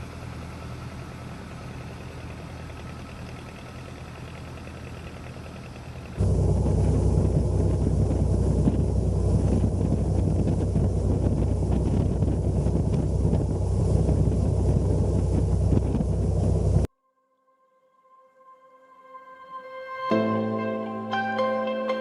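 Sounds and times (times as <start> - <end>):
speedboat engine running: 0.0 - 16.9
wind noise on microphone: 6.2 - 16.9.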